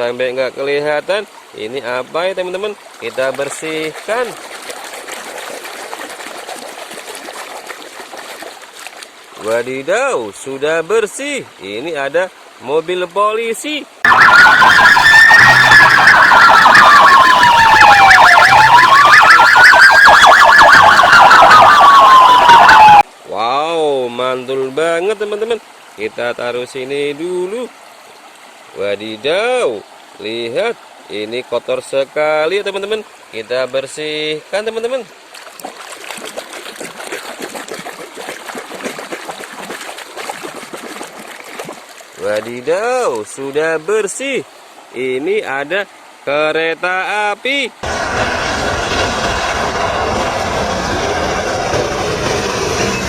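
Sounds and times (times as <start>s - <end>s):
water splashing and trickling: 0.0s - 47.8s
fast electronic siren yelp: 14.0s - 23.0s
police siren wailing: 14.0s - 23.0s.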